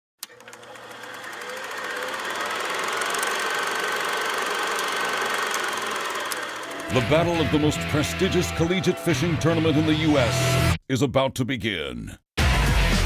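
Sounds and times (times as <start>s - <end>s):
motor running steadily: 0.4s - 10.7s.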